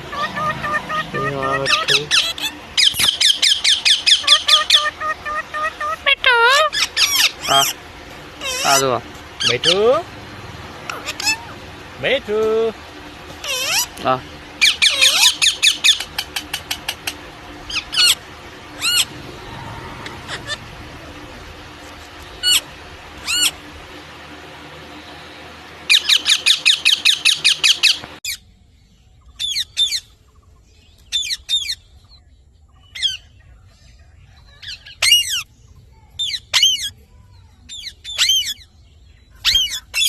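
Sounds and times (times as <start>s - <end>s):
parrot squawking: 0.0s - 7.8s, 8.4s - 10.1s, 10.8s - 11.7s, 13.4s - 21.3s, 22.3s - 23.6s, 25.9s - 28.4s, 29.4s - 30.1s, 31.1s - 31.8s, 34.6s - 35.5s, 36.2s - 37.0s, 37.7s - 38.7s, 39.4s - 40.0s
low hum: 0.0s - 31.1s.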